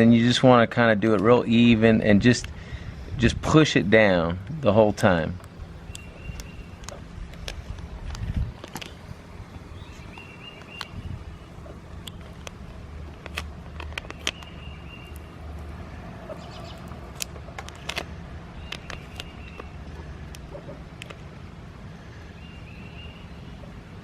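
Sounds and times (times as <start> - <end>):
low outdoor rumble: 0.0 - 24.0
tape peeling with clicks and crackles: 4.5 - 21.5.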